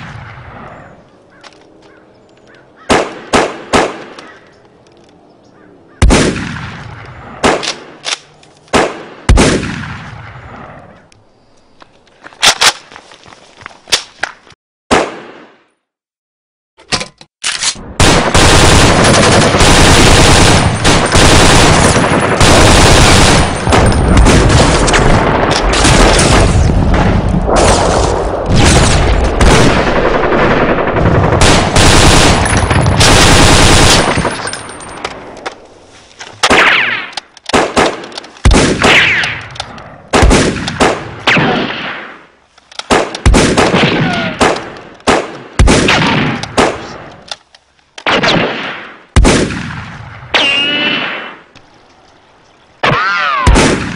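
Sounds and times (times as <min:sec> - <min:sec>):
automatic gunfire: 0:18.0 - 0:26.6, 0:28.6 - 0:34.4.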